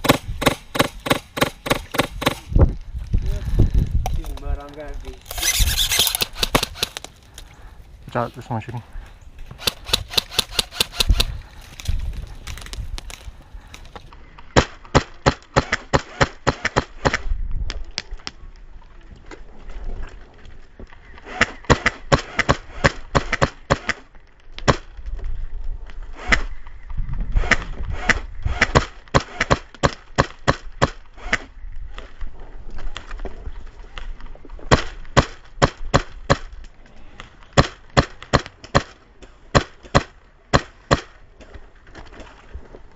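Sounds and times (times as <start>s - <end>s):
wind rumbling on microphone: 0.0s - 14.6s, 17.0s - 21.3s, 24.2s - 29.0s, 30.6s - 37.3s
airsoft rifle rapid shots: 5.3s - 7.0s, 9.6s - 11.3s.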